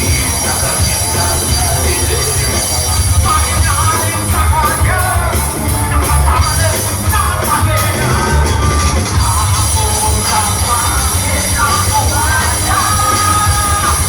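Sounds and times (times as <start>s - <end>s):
drums: 0.0s - 14.0s
electric bass: 0.0s - 14.0s
electric guitar: 0.0s - 14.0s.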